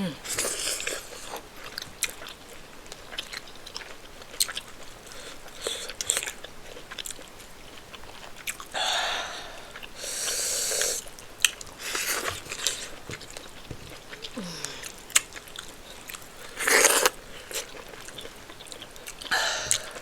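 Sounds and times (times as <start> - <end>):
wet chewing: 0.2 - 8.8, 9.6 - 20.0
breathy sounds: 8.8 - 11.0, 14.2 - 15.1, 19.3 - 20.0.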